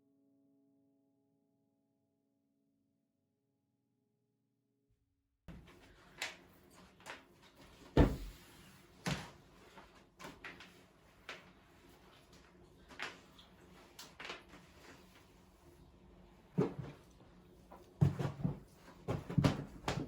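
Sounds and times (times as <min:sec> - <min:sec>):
heavy thump: 0:08.0 - 0:08.4.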